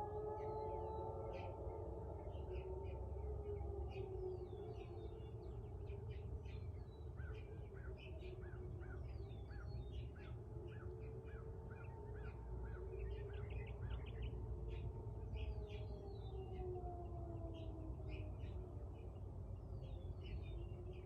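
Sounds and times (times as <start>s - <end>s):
warning siren wavering tone: 0.0s - 6.4s, 13.6s - 19.0s
songbirds chirping: 0.0s - 21.0s.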